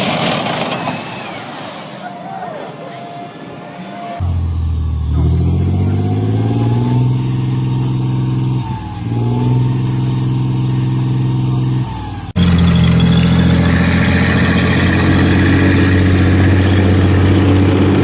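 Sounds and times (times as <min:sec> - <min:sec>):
tank engine revving: 0:03.9 - 0:18.0
louder engine sound: 0:04.1 - 0:18.0.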